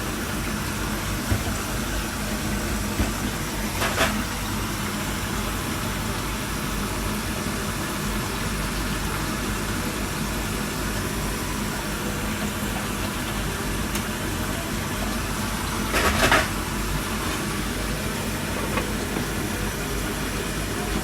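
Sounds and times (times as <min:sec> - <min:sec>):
mechanical hum with hiss: 0:00.0 - 0:21.0.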